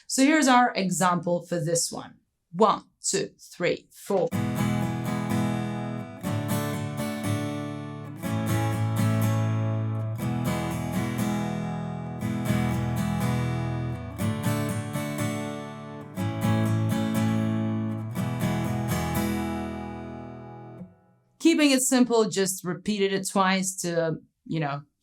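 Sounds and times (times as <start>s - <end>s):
guitar strumming chords: 4.3s - 20.9s.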